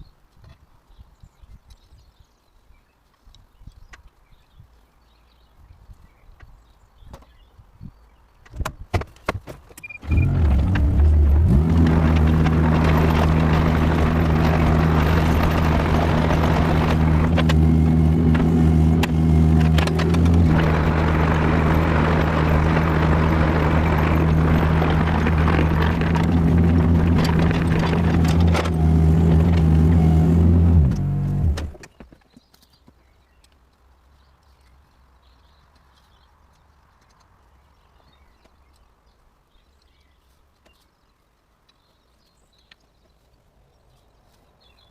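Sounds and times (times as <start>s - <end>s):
diesel engine starting and running: 9.8s - 32.0s.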